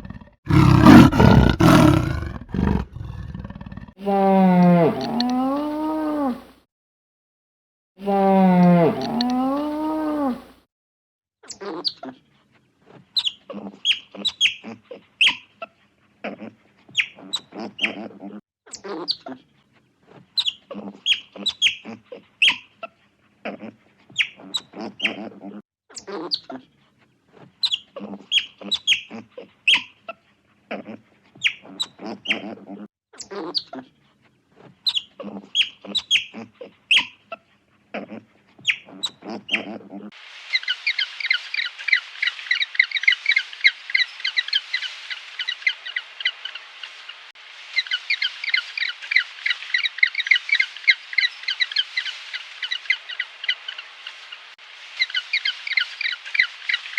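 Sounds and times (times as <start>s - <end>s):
animal high-pitched chirps: 27.6s - 29.9s, 34.9s - 37.2s.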